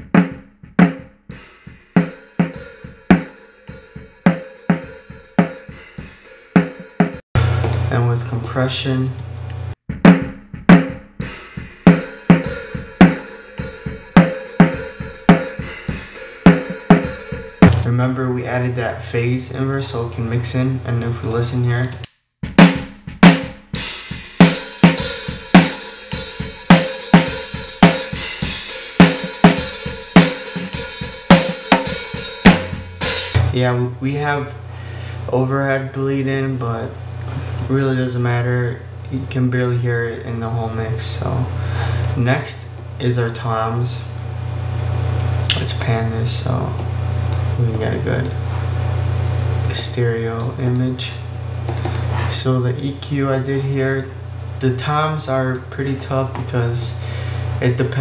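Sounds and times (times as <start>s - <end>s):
hi-hat and cymbals: 0.0s - 8.7s, 9.9s - 17.9s, 22.5s - 33.7s
soft drum kit strikes: 0.0s - 8.7s, 9.9s - 18.0s, 22.4s - 33.7s
snare drum hits: 22.4s - 25.8s, 26.4s - 33.6s.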